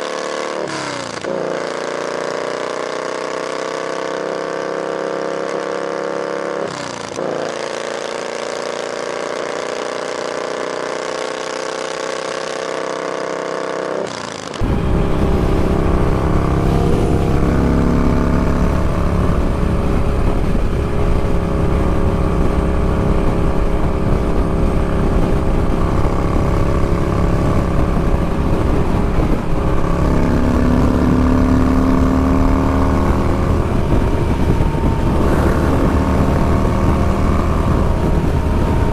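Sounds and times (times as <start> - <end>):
motorcycle engine running: 14.0 - 38.9
wind buffeting microphone: 14.6 - 38.9.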